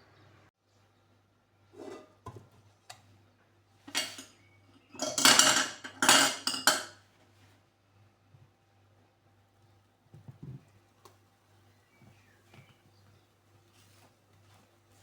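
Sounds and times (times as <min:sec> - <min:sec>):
cutlery and dishes clattering: 0:03.9 - 0:07.0.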